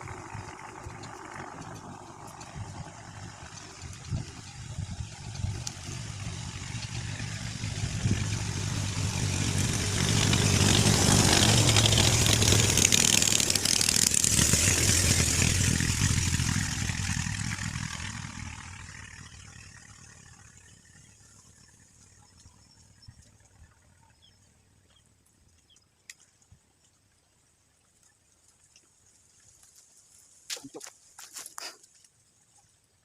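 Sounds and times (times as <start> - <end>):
engine passing by: 0.0 - 22.1.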